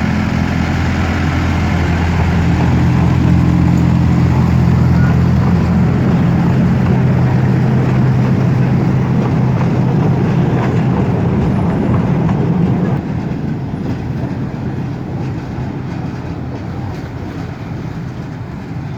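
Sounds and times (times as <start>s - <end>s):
toy train engine hum and rumble: 0.0s - 10.7s.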